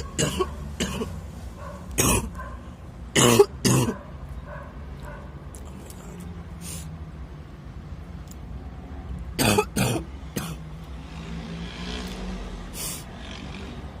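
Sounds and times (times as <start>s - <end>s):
person coughing: 0.2s - 1.2s, 2.0s - 2.3s, 3.2s - 4.0s, 9.4s - 10.6s.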